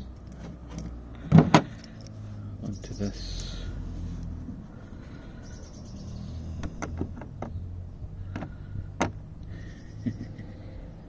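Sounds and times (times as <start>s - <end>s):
clicks and knocks of parts handled: 0.2s - 2.2s.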